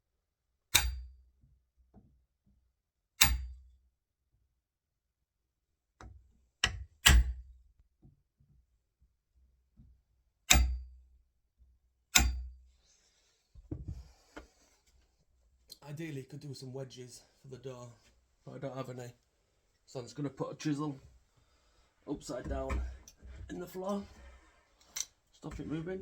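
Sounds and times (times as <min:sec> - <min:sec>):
hammer striking chisel: 0:00.7 - 0:01.1, 0:03.2 - 0:03.6, 0:10.5 - 0:10.8, 0:12.1 - 0:12.5.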